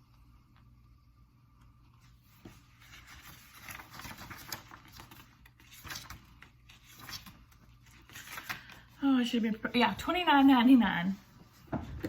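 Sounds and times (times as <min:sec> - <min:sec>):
paper pages rustling: 0:01.9 - 0:10.0.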